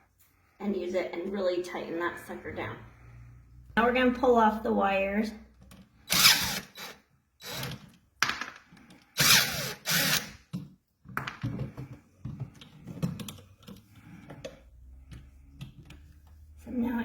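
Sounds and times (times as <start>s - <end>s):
screwdriver scraping rasps: 6.1s - 8.0s, 9.2s - 10.5s.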